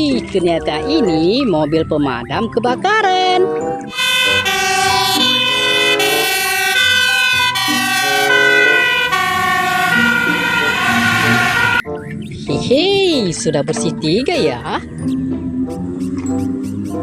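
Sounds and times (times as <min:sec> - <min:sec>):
fire engine siren: 0:03.9 - 0:11.9.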